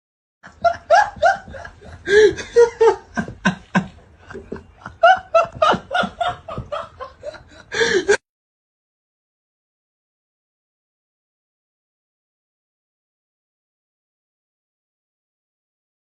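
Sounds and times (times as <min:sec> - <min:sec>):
people laughing hard: 0:00.4 - 0:08.2.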